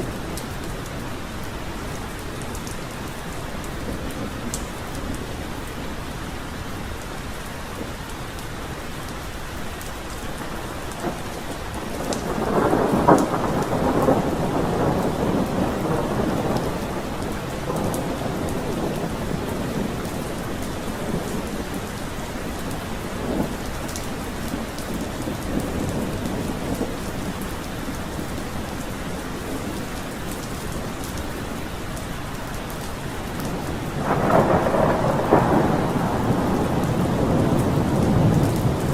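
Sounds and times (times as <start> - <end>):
heavy rain: 0.0 - 38.9
thunder rumbling: 10.3 - 38.9.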